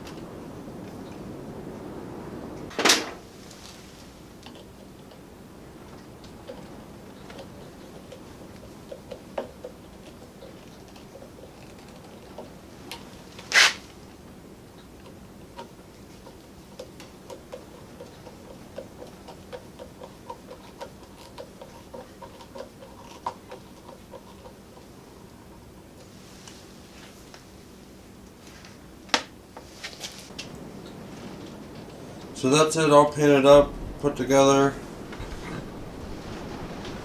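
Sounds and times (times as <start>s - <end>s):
short sharp hiss: 13.5s - 13.9s.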